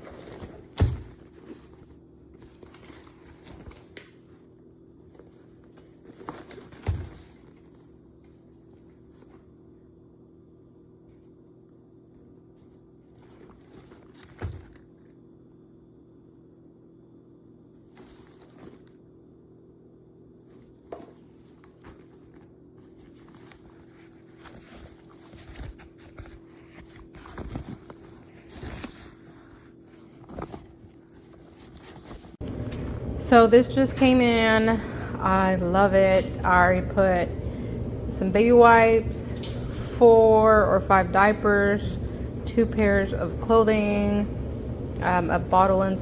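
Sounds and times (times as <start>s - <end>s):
steady low hum: 0.0s - 46.0s
handling rustles and light knocks: 20.4s - 33.1s.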